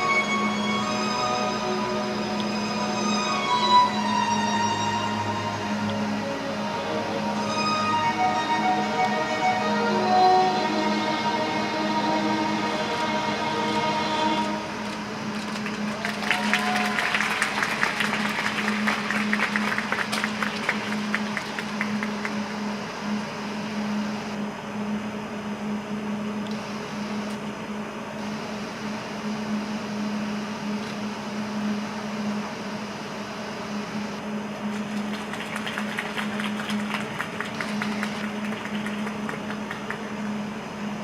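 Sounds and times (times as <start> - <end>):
low mechanical hum: 0.0 - 41.0
scattered clapping: 14.8 - 22.6, 34.7 - 40.4
arena applause: 15.3 - 22.5, 34.7 - 40.3.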